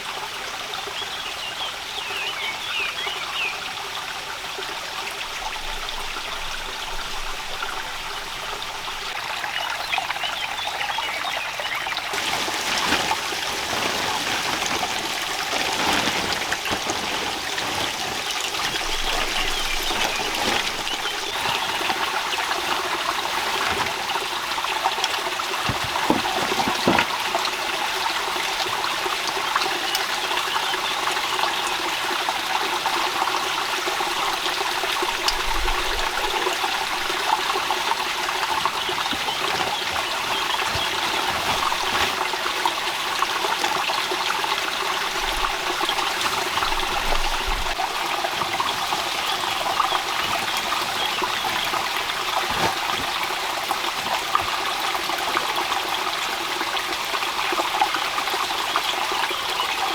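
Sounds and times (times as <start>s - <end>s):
water trickling: 4.4s - 59.6s
steady rain falling: 12.1s - 30.2s.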